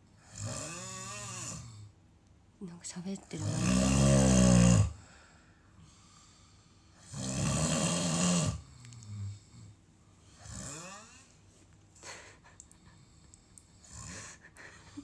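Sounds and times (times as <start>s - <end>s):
person snoring loudly: 0.2s - 1.8s, 3.4s - 5.0s, 7.0s - 9.4s, 10.4s - 11.2s
snuffling breaths: 12.0s - 15.0s.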